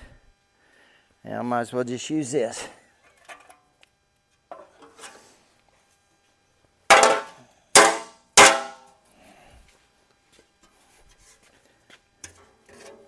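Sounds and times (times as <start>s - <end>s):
sharp metallic clangs: 6.9s - 8.8s.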